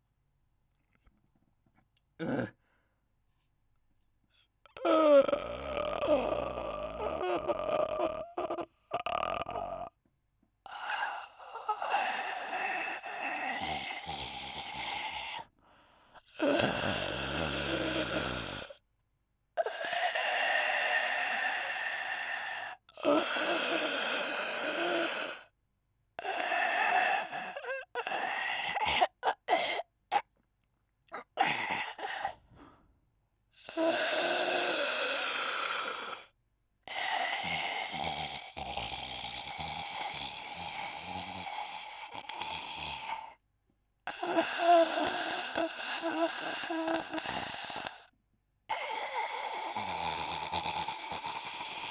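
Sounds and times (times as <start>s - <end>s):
man snoring loudly: 2.2s - 2.5s, 4.8s - 9.9s, 10.7s - 15.4s, 16.2s - 18.8s, 19.6s - 25.4s, 26.2s - 30.2s, 31.2s - 32.4s, 33.6s - 36.2s, 36.9s - 43.3s, 44.1s - 48.1s, 48.7s - 51.9s.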